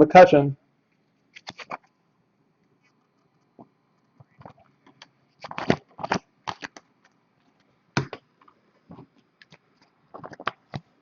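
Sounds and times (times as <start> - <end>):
cards sliding and tapping: 1.3 - 1.9, 2.8 - 10.9.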